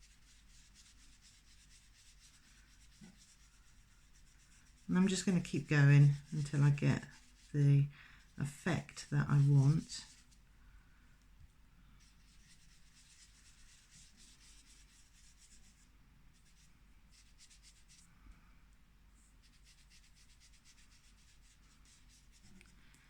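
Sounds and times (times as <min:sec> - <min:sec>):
tool rubbing on cardstock: 0:00.0 - 0:10.4, 0:12.0 - 0:15.8.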